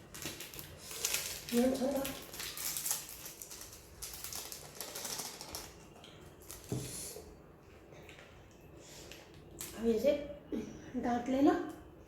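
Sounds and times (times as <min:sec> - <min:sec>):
food container crackling: 0:00.0 - 0:06.7.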